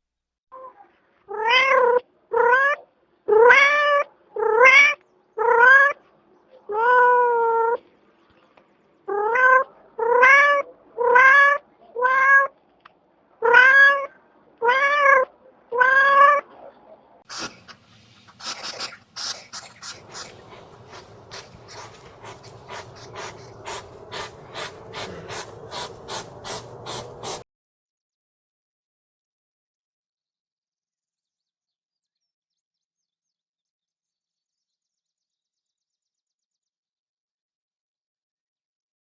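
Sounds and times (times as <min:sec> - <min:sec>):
cat meowing: 0:01.3 - 0:06.0, 0:06.7 - 0:07.8, 0:09.1 - 0:12.5, 0:13.4 - 0:16.5.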